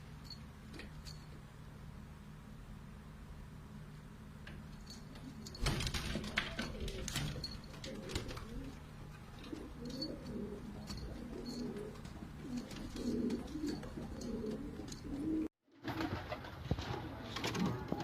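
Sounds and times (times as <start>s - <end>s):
pigeons cooing: 6.2s - 15.5s.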